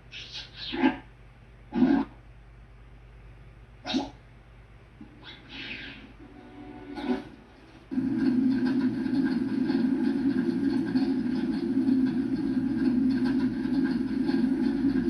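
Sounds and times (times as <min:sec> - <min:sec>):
low mechanical rumble: 0:07.9 - 0:15.0.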